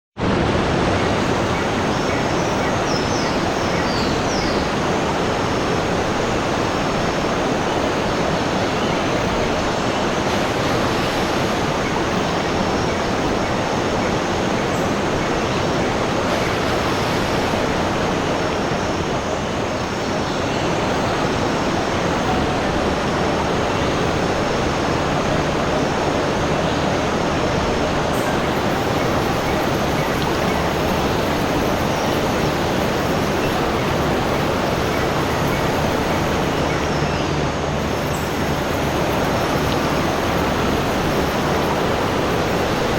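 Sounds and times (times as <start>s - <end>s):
running water rushing: 0.2s - 42.9s.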